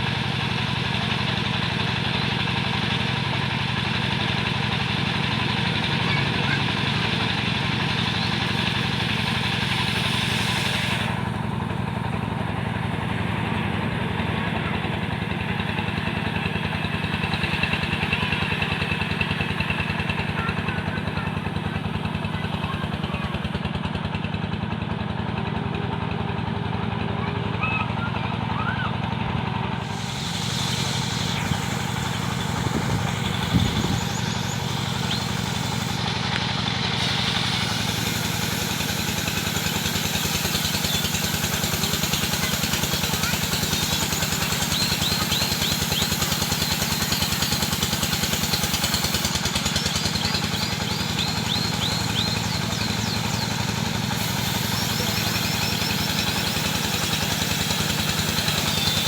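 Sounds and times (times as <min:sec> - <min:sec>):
sawing machine engine humming: 0:00.0 - 0:27.3, 0:29.3 - 0:59.0
high hiss: 0:08.1 - 0:11.4, 0:29.8 - 0:59.0.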